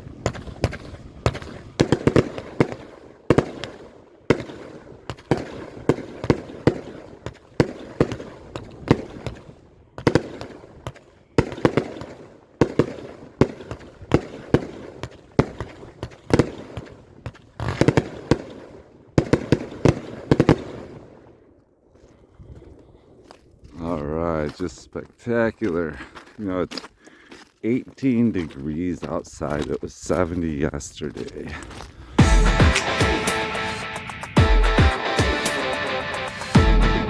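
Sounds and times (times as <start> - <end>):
firework bangs and crackling: 0.0 - 21.4.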